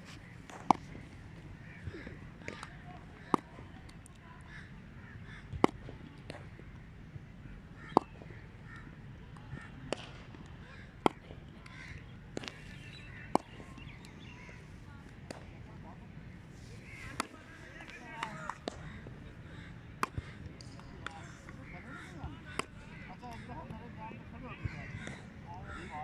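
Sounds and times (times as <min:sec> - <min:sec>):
cricket bat striking ball: 0:00.5 - 0:01.2, 0:05.4 - 0:06.7, 0:07.8 - 0:15.8, 0:17.0 - 0:23.7.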